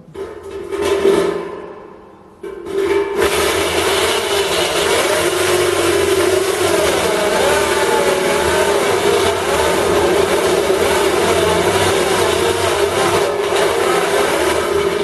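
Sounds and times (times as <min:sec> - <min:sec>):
electric drill whining: 0:03.2 - 0:15.0
harsh rasping hiss: 0:03.2 - 0:15.0.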